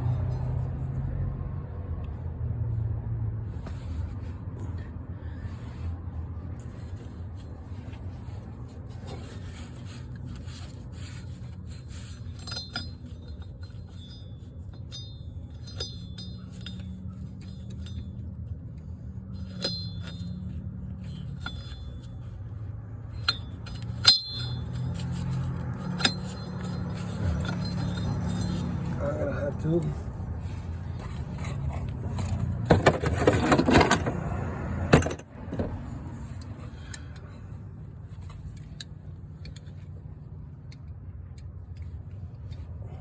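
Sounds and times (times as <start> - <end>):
metal tools clinking and scraping: 8.2 - 40.0.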